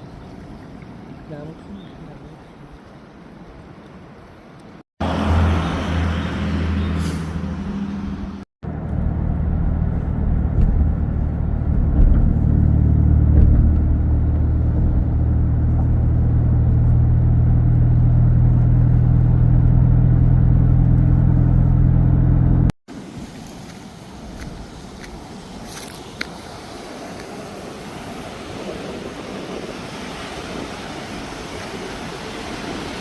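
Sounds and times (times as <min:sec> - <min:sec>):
engine droning: 0:05.0 - 0:22.7.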